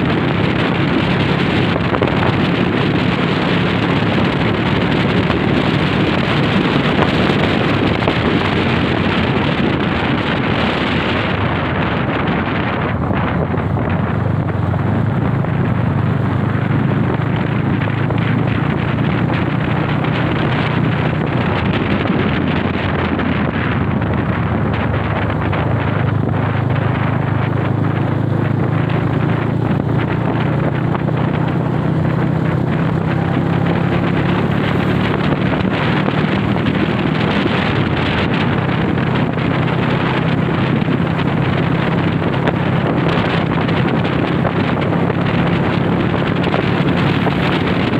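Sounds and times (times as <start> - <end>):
motorcycle engine running: 0.0 - 47.9
wind rushing over microphone: 0.0 - 47.9.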